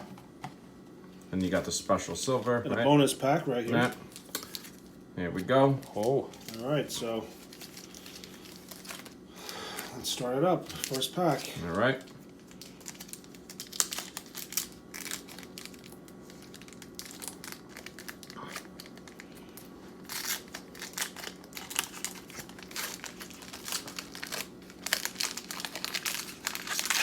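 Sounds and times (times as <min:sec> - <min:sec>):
plastic wrapper tearing and crinkling: 0:03.6 - 0:27.0.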